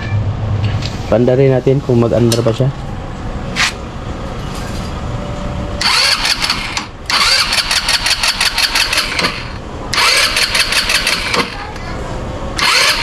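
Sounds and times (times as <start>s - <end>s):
motorcycle starter cranking engine: 5.8s - 11.6s, 12.6s - 13.0s.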